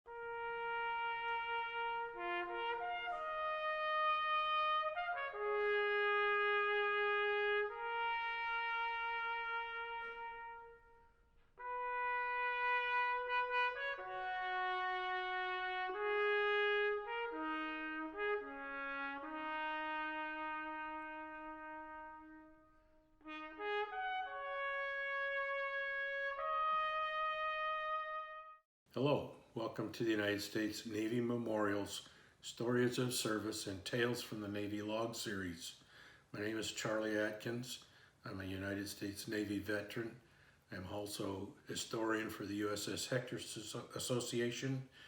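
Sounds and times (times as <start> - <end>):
solo trumpet melody: 0.1 - 28.6.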